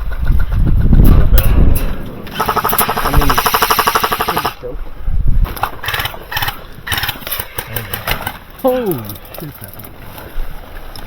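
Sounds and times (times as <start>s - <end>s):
airsoft gun firing bursts: 2.3s - 4.6s.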